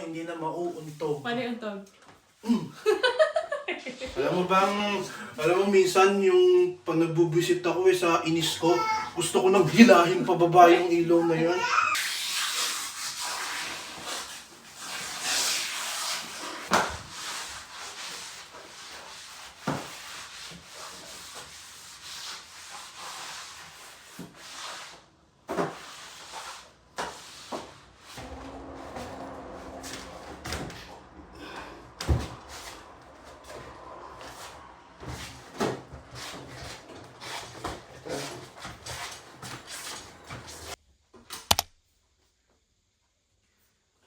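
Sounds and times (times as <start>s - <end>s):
rubbing scraping hiss: 11.2s - 25.0s.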